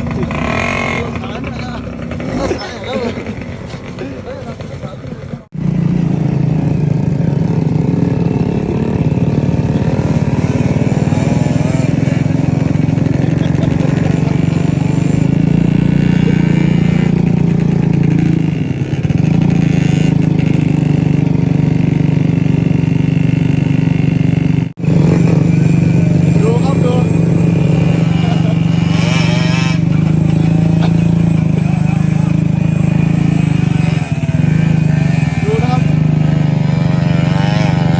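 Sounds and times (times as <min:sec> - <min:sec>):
motorcycle engine running: 0:00.0 - 0:37.9.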